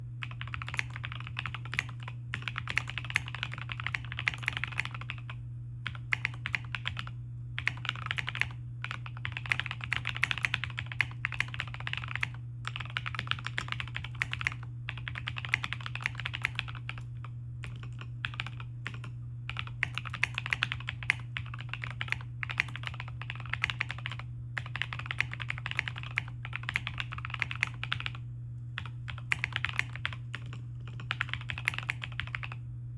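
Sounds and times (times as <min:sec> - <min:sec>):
low steady hum: 0:00.0 - 0:32.9
mechanical keyboard typing: 0:00.2 - 0:28.2, 0:28.8 - 0:32.6.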